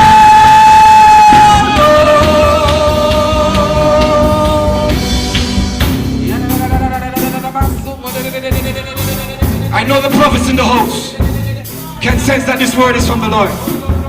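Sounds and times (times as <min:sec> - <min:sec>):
church worship band playing: 0:00.0 - 0:14.0.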